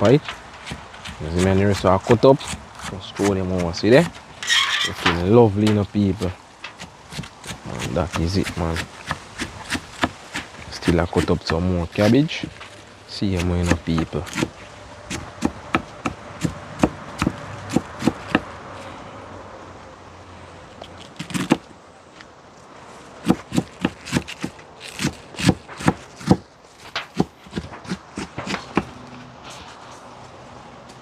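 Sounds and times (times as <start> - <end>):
knife chopping cabbage: 0.6 - 4.2, 6.8 - 12.6, 13.3 - 18.5, 23.2 - 28.9.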